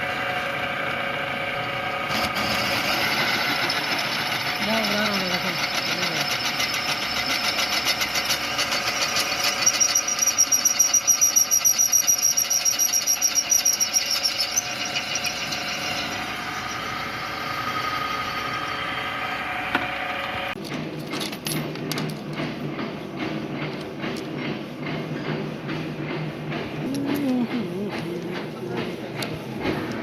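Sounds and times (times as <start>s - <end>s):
metal lathe running: 0.0s - 20.6s, 22.3s - 30.0s
high-pitched whine and chatter: 3.6s - 7.9s.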